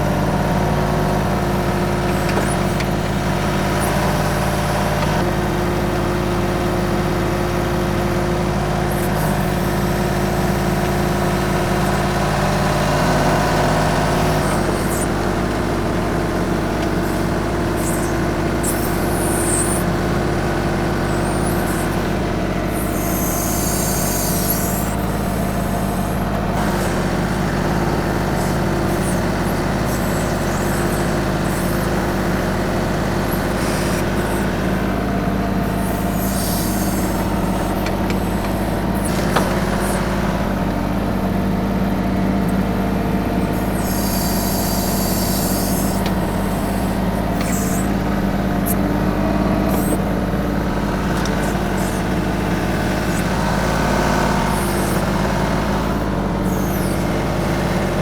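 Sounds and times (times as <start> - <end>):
tractor diesel engine running: 0.0 - 58.0
high hisses or squeals: 22.7 - 34.8, 35.6 - 40.1, 43.4 - 48.0.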